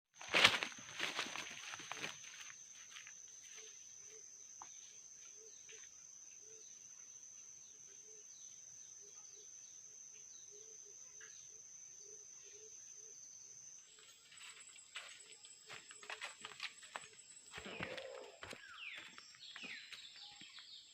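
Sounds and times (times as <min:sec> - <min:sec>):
rustling in dry leaves: 0:00.2 - 0:03.6.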